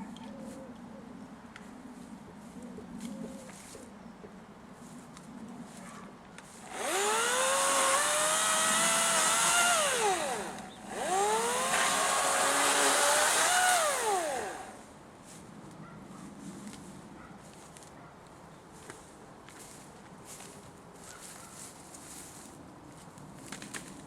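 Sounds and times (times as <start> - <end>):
electric chainsaw motor whining: 6.6 - 14.8.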